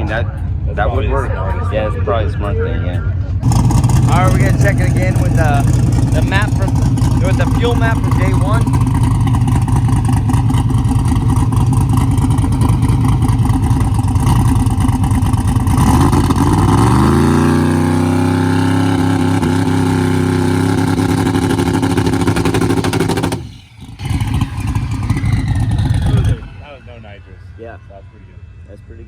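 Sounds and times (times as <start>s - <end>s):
turbocharged car engine revving: 0.0s - 29.0s.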